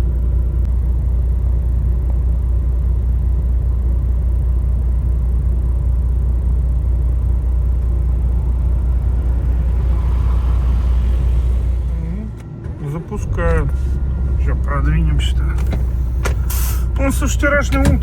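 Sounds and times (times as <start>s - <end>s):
diesel truck engine idling: 0.0s - 18.0s.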